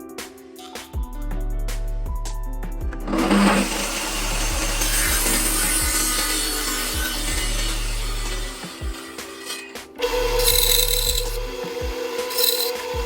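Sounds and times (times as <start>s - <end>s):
saw motor hum: 3.1s - 8.6s, 9.4s - 13.0s
saw blade grinding metal: 3.1s - 13.0s.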